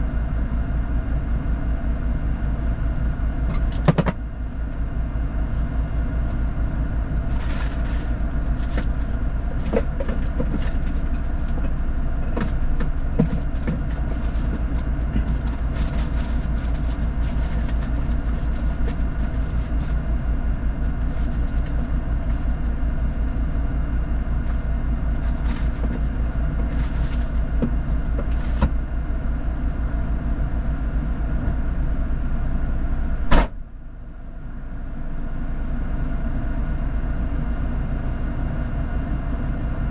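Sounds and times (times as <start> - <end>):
off-road vehicle engine running: 0.0 - 39.9
knocks and rattles: 12.3 - 18.0.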